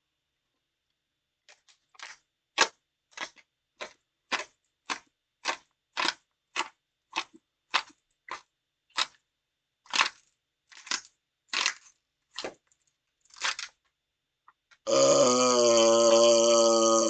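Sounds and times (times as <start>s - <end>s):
loud burp: 14.9s - 17.0s.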